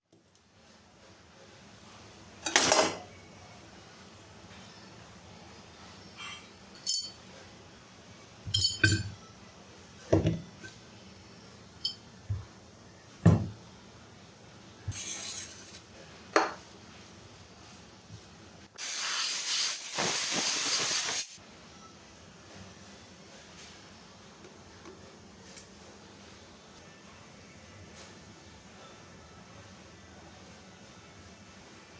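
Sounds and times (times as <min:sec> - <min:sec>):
metal tools clinking and knocking: 0:06.8 - 0:07.2, 0:08.5 - 0:09.2
spray hissing: 0:18.8 - 0:21.4.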